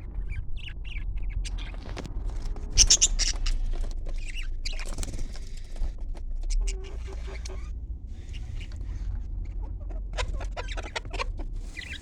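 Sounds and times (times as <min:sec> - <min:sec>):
small parrots chattering: 0:02.8 - 0:03.6, 0:10.2 - 0:12.0.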